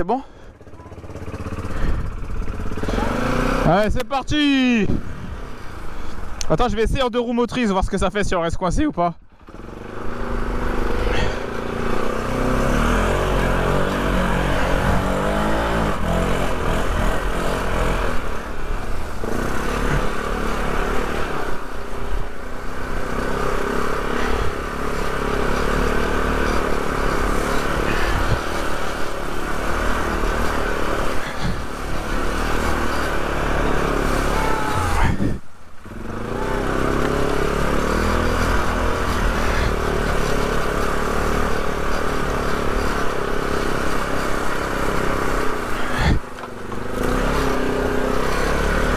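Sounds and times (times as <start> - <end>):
quad engine running under load: 0.0 - 8.0, 8.7 - 48.9.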